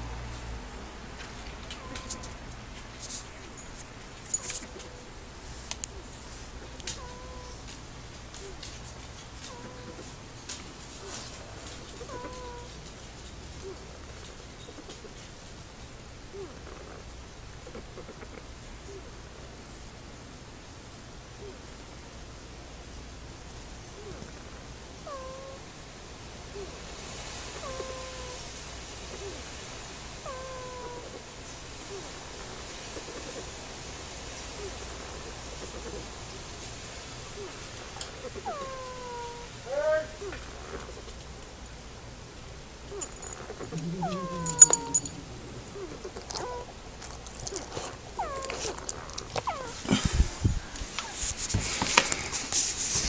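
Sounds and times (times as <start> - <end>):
puppy snoring with squeaky whine: 1.6 - 2.3, 3.2 - 5.2, 5.9 - 7.7, 9.4 - 10.2, 11.0 - 19.2, 24.0 - 25.7, 27.5 - 28.5, 29.1 - 33.7, 37.3 - 39.5, 42.9 - 50.1
puppy snoring squeaky whistles: 43.4 - 45.2.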